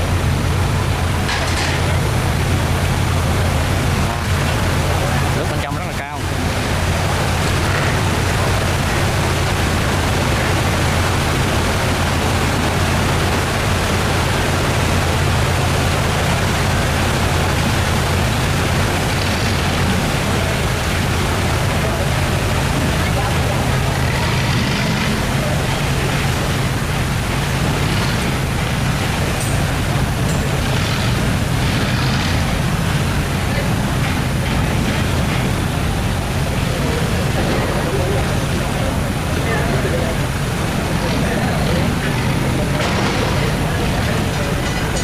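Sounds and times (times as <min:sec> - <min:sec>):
boat engines rumbling: 0:00.0 - 0:45.0
low steady drone: 0:00.0 - 0:45.0
water rushing through sluice gate: 0:00.0 - 0:45.0.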